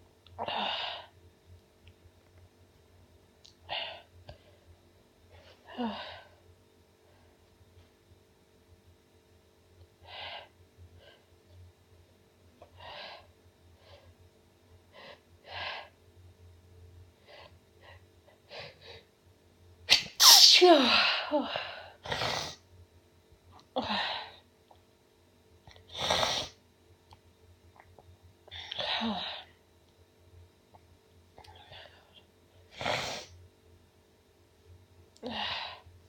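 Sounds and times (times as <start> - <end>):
woman sneezing: 19.9 - 21.4.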